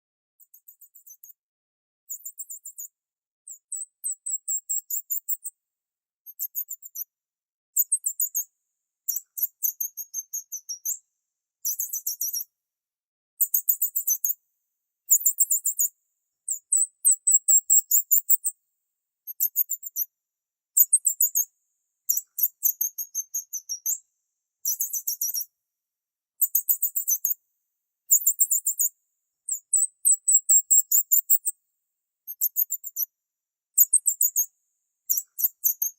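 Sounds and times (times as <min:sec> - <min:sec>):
high-pitched bird chirping: 0:11.6 - 0:12.4, 0:16.5 - 0:18.5, 0:28.1 - 0:28.9, 0:29.5 - 0:31.5, 0:32.3 - 0:33.1.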